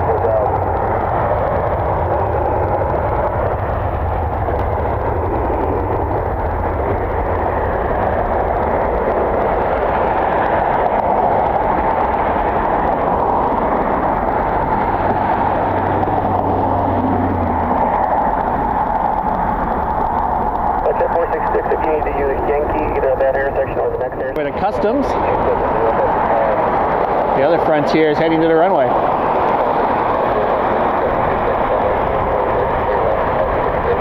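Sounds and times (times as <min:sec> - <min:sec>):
jet engines roaring: 0:00.0 - 0:34.0
low rumble: 0:00.0 - 0:34.0.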